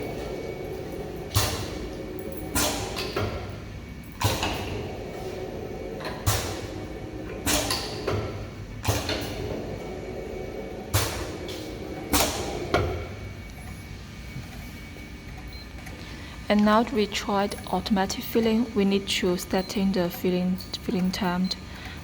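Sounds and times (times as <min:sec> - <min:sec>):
steady low hum: 0:00.0 - 0:22.0
machine clicks with hiss: 0:04.2 - 0:04.8, 0:06.1 - 0:06.7, 0:07.4 - 0:09.4.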